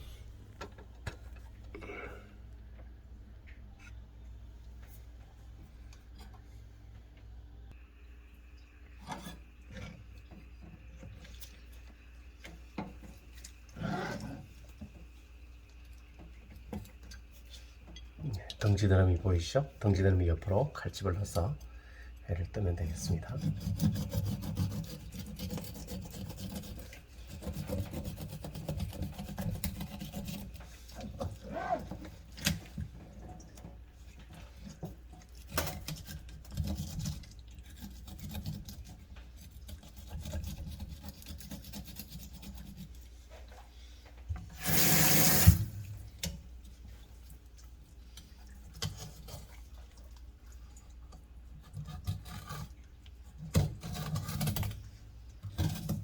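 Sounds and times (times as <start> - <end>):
knife scraping fish: 23.0 - 32.6, 35.2 - 43.1, 51.5 - 56.0.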